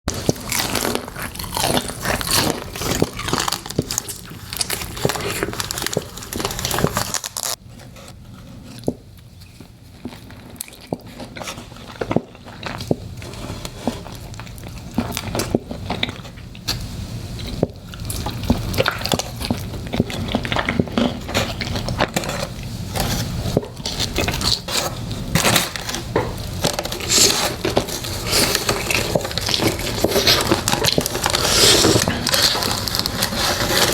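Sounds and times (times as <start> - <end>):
biting and chewing chicken wings: 0.1 - 7.6, 9.9 - 33.9
wet crackly mouth sounds: 0.1 - 7.6, 10.0 - 22.7, 23.6 - 33.9.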